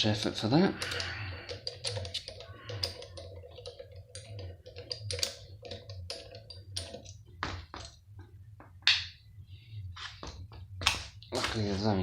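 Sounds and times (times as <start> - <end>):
hand tools clicking and tapping: 0.0 - 8.7.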